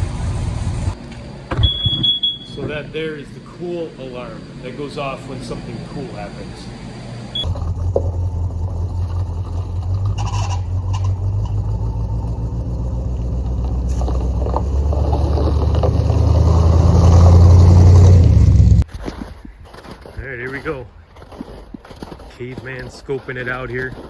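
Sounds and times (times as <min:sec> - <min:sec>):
vehicle engine humming: 0:00.0 - 0:18.9.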